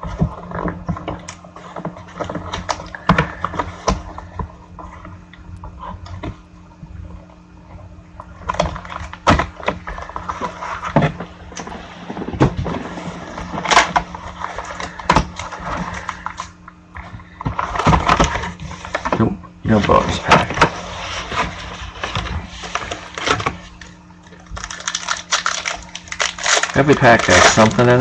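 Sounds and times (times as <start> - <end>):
foil packs crinkling: 13.3 - 16.5, 21.1 - 28.0.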